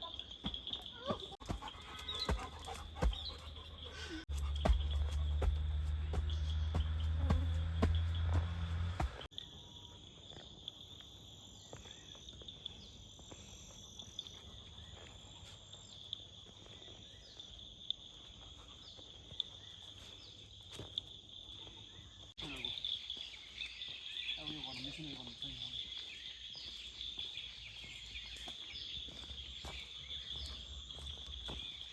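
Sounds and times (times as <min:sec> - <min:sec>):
insects chirring: 0:00.0 - 0:31.9
loud low hum: 0:04.3 - 0:09.3.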